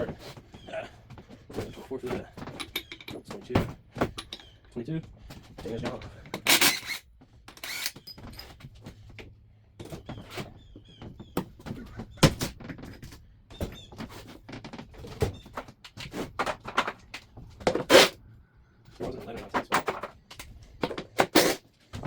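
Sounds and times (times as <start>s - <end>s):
metal tools clinking and knocking: 2.4s - 4.6s, 5.8s - 8.7s, 19.5s - 20.2s.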